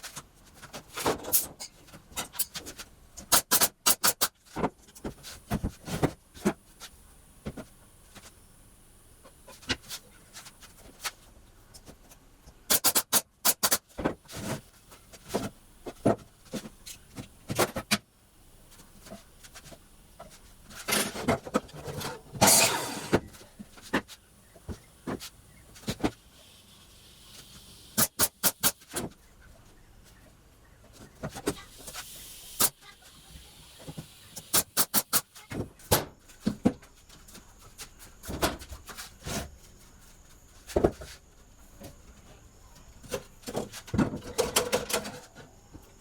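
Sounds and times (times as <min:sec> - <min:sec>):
rough scraping: 0:21.7 - 0:23.3.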